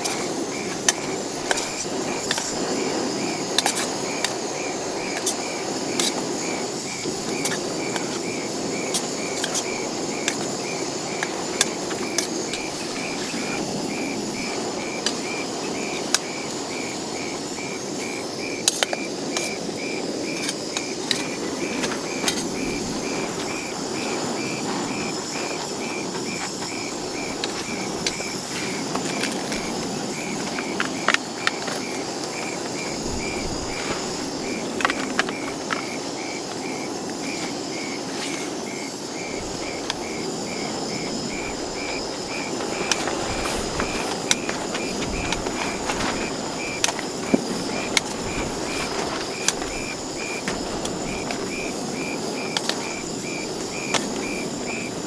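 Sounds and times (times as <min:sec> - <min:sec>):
insect chirping: 0:00.0 - 0:55.0
rushing background noise: 0:38.6 - 0:55.0.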